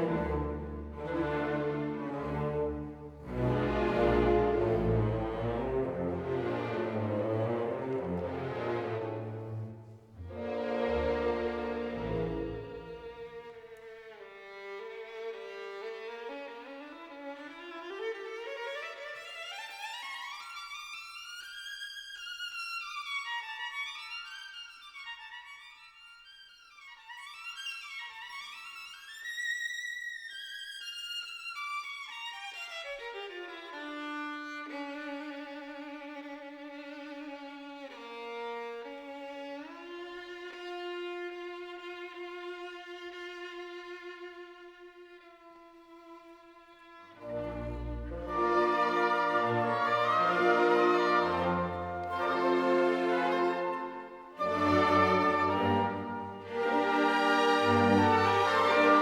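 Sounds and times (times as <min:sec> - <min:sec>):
background music melody: 0:47.2 - 0:59.0.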